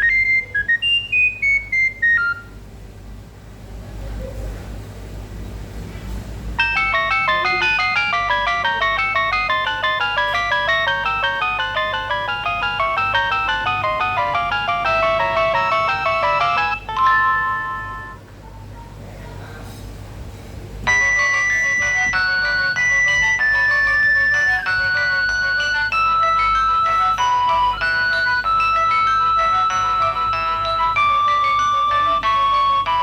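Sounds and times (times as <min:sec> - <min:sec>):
polyphonic phone ringtone: 0:00.0 - 0:02.5, 0:06.6 - 0:18.3, 0:20.9 - 0:33.0.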